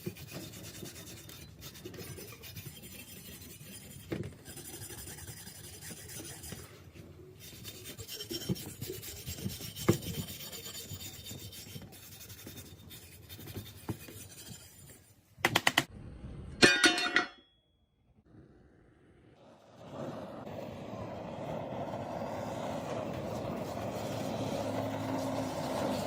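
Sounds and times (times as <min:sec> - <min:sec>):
file rubbing on metal: 0:00.0 - 0:15.2, 0:23.2 - 0:26.0.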